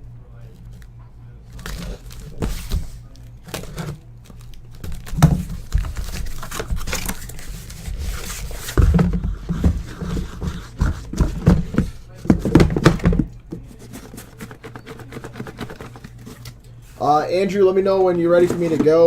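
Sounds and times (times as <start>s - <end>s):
low electrical hum: 0.0s - 19.0s
card packaging crinkling: 1.5s - 8.9s, 13.7s - 16.7s.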